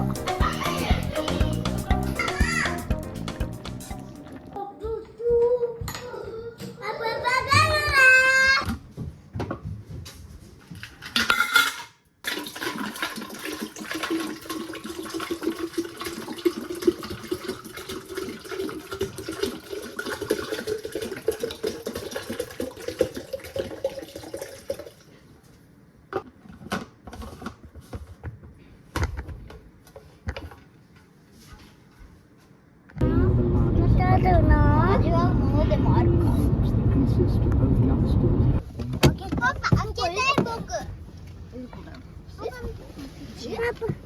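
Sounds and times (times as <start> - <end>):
kitchenware clinking: 11.0 - 12.8
tap water filling container: 12.3 - 25.1.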